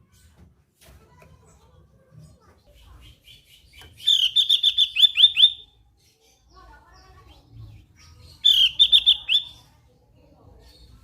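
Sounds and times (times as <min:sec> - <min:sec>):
bird chirping high notes: 0:03.7 - 0:05.8, 0:08.4 - 0:09.7.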